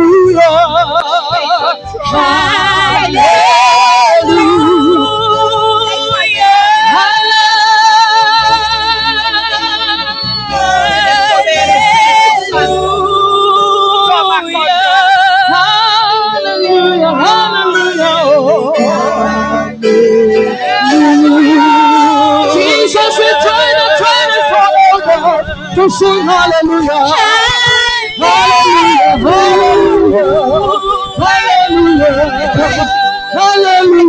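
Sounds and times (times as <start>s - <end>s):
low keyboard accompaniment: 0.0s - 34.0s
worship singing with vibrato: 0.0s - 34.0s.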